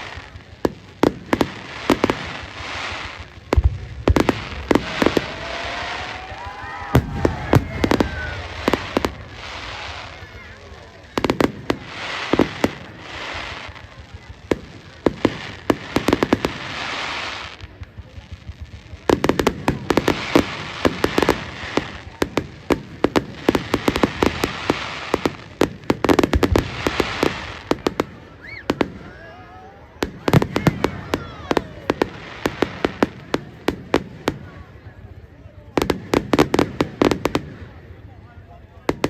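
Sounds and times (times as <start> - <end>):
hissing crackling bursts: 0.0 - 29.2
fireworks bangs and pops: 0.0 - 39.0
firework whistles: 1.4 - 13.8, 26.5 - 33.1.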